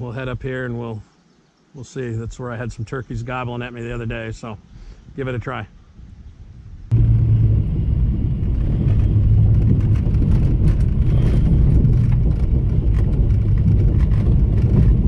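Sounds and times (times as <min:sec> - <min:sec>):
car engine hum: 0:06.9 - 0:15.0
road rumble: 0:06.9 - 0:15.0.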